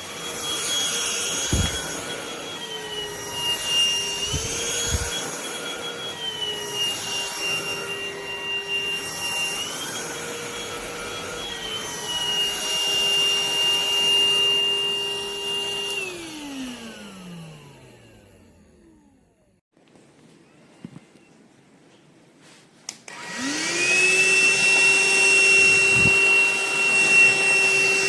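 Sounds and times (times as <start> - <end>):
stick vacuum motor whine: 0.0 - 19.5, 23.0 - 28.0.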